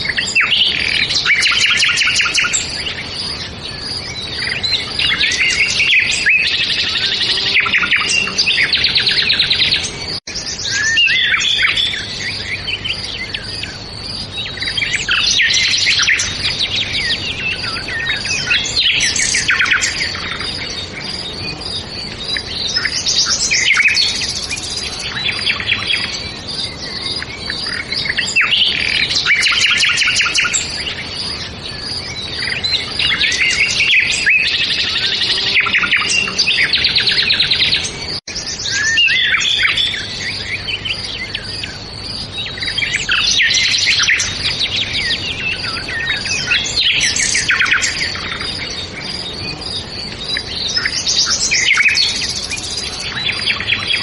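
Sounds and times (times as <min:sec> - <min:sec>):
small birds chirping: 0:00.0 - 0:54.0.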